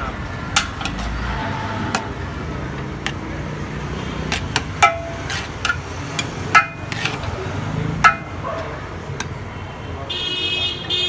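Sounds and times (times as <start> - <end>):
steady background din: 0.0 - 10.1
metal utensils clinking: 0.4 - 9.4.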